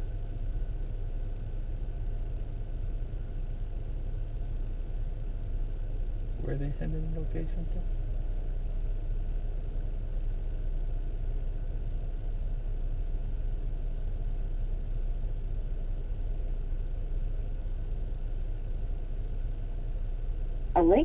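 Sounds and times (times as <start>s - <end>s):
steady low rumble: 0.0s - 21.0s.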